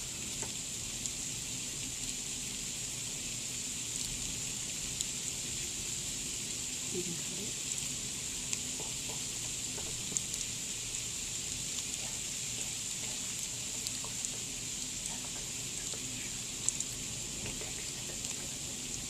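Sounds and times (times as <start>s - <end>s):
freezing rain hissing: 0.0s - 19.0s.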